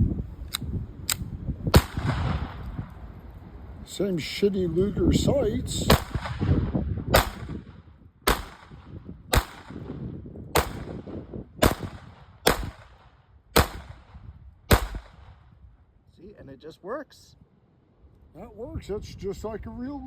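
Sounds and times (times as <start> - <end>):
pistol shots: 1.7 - 2.6, 5.9 - 10.0, 10.6 - 15.4.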